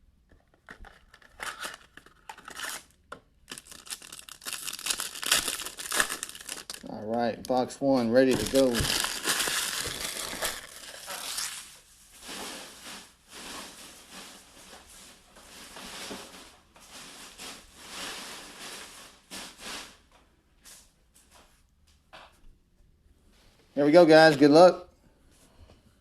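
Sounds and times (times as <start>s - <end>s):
packaging rustling and crinkling: 0.3s - 19.8s.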